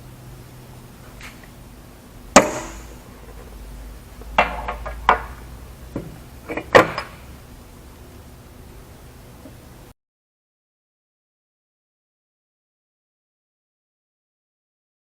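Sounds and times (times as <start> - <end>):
steady low hum: 0.0 - 9.9
tools knocking and clunking: 4.2 - 7.2.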